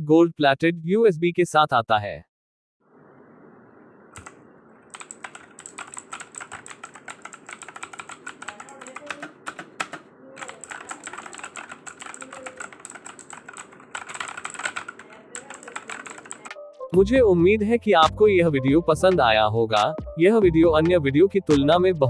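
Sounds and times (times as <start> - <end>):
mechanical keyboard key clicks: 4.2 - 4.4.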